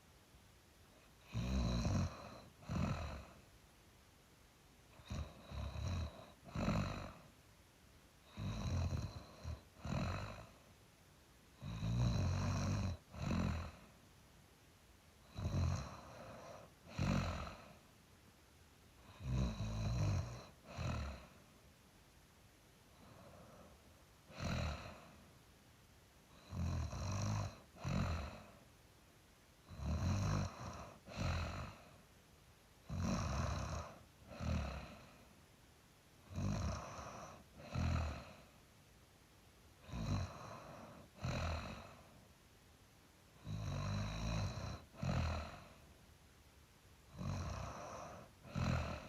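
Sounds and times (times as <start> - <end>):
person snoring: 1.2 - 3.4, 4.9 - 7.3, 8.2 - 10.6, 11.6 - 13.9, 15.2 - 17.8, 19.0 - 21.4, 23.0 - 25.2, 26.3 - 28.6, 29.7 - 32.0, 32.8 - 35.3, 36.2 - 38.6, 39.8 - 42.1, 43.4 - 45.9, 47.1 - 49.0.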